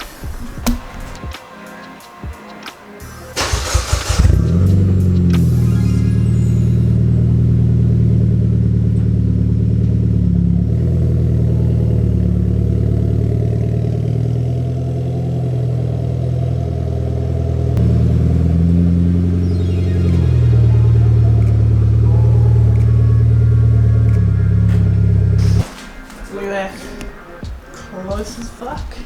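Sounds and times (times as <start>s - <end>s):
car engine idling: 0.0s - 25.8s.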